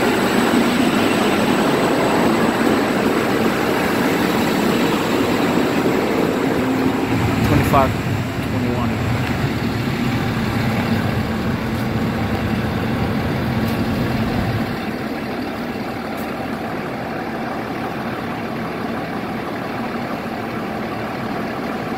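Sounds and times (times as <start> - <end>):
diesel train engine rumbling: 0.0 - 21.9.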